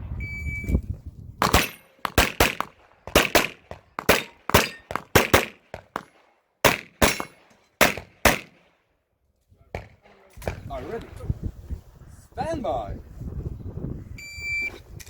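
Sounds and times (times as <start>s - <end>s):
shot timer beep: 0.2s - 0.8s, 14.2s - 14.7s
rapid pistol shots: 1.4s - 8.7s.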